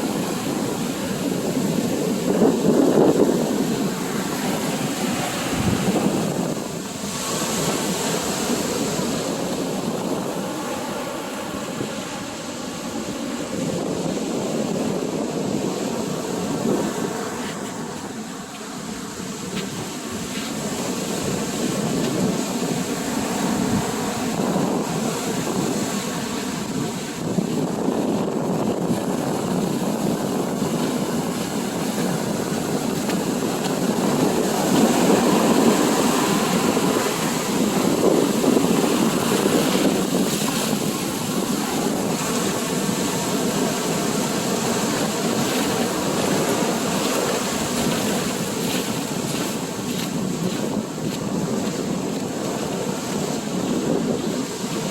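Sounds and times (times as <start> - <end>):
ocean surf rushing onto beach: 0.0 - 54.9
wind on microphone: 0.0 - 54.9.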